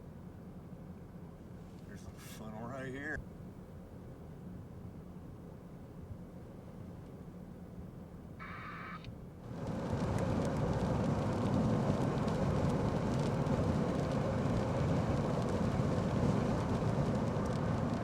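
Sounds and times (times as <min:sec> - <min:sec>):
car road and wind noise: 0:08.0 - 0:18.0.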